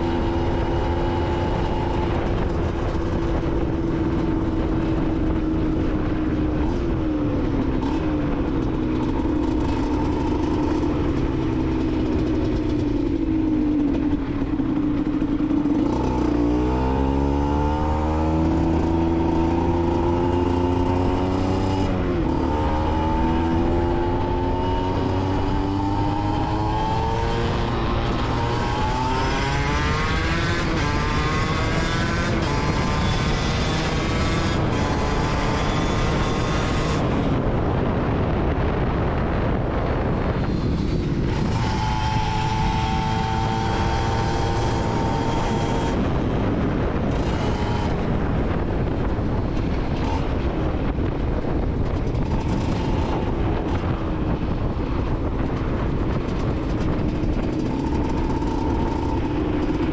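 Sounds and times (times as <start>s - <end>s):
two-stroke motorcycle engine: 0.0s - 59.9s.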